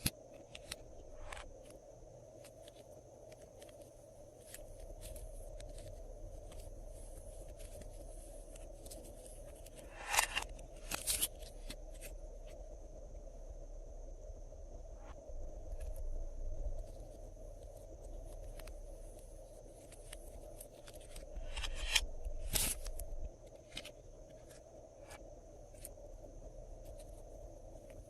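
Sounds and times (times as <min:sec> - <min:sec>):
small clicks and pops: 0:00.0 - 0:12.6.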